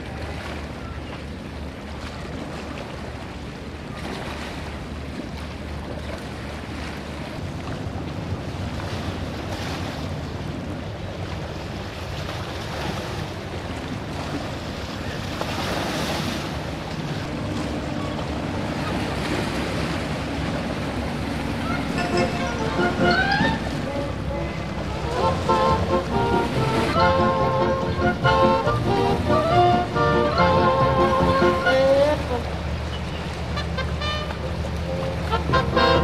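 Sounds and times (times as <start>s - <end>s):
water splashing around a boat: 0.0s - 36.0s
low engine hum: 16.3s - 36.0s.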